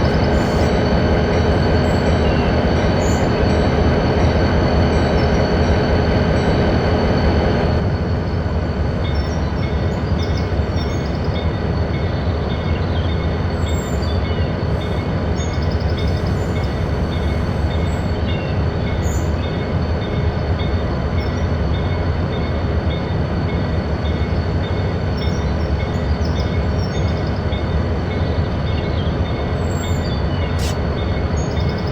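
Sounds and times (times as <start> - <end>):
locomotive bell ringing: 0.0 - 8.0
train rumbling past: 0.0 - 31.9.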